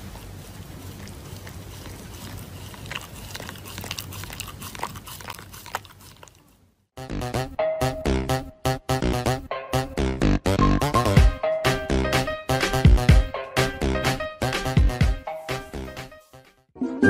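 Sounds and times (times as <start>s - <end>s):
dog chewing: 0.0s - 6.7s
electronic music with a beat: 10.0s - 16.1s.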